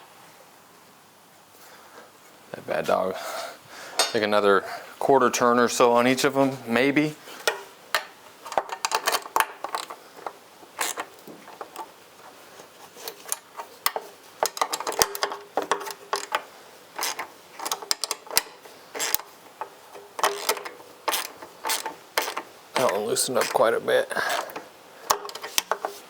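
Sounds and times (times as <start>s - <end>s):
hand ratchet clicking: 7.4s - 11.9s, 13.0s - 26.0s.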